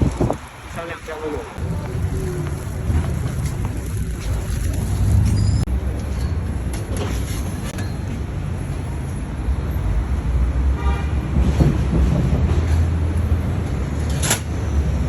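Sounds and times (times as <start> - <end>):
road traffic rumble: 0.0 - 15.0
vehicle horn toot: 10.8 - 11.2.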